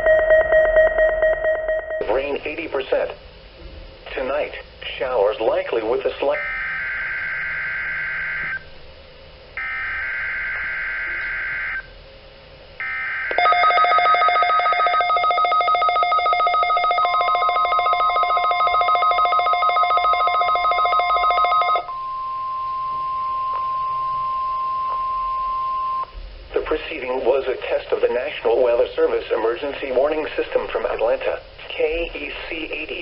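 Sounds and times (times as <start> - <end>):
rapid pulsing alert beeps: 0.0 - 2.2, 13.4 - 22.6
steady warning alarm tone: 0.0 - 2.5, 6.3 - 8.7, 9.6 - 12.0, 12.8 - 26.1
radio hiss: 2.1 - 3.3, 4.0 - 6.5, 26.5 - 33.0.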